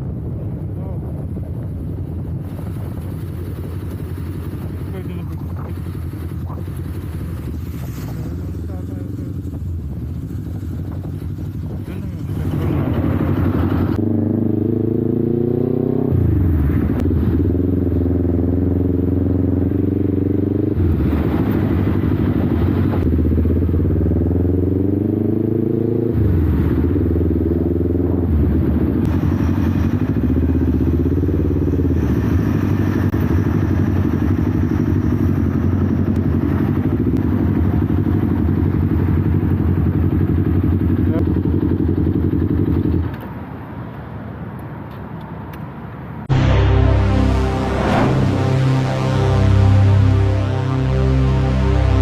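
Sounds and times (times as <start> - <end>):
wind noise on microphone: 0.0 - 14.0, 19.7 - 24.3
motorcycle engine accelerating: 0.0 - 43.2, 46.3 - 52.0.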